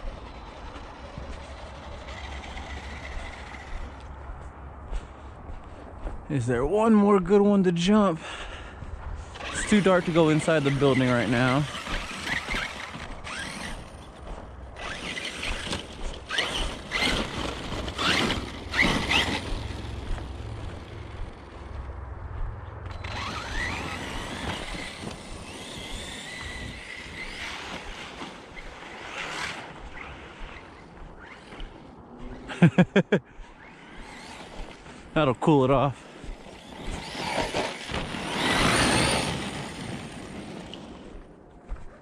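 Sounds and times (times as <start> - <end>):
electric motor whine: 0.0 - 4.1, 9.4 - 14.2, 14.8 - 22.0, 22.8 - 32.4, 36.2 - 41.3.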